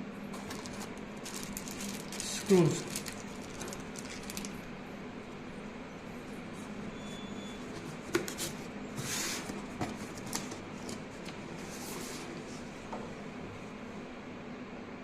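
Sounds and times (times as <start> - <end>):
steady low hum: 0.0 - 15.0
packaging rustling: 0.3 - 4.7.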